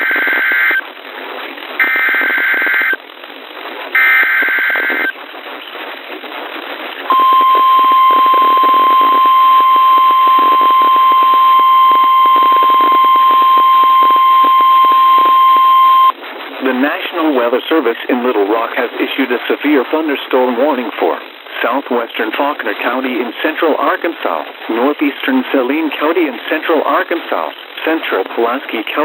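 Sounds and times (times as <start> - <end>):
radio static: 1.7 - 29.0
digital data bursts: 7.1 - 16.1
steady warning alarm tone: 7.1 - 16.1.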